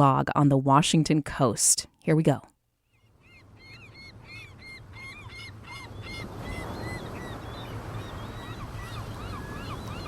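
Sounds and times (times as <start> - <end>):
seagulls calling: 2.9 - 10.0.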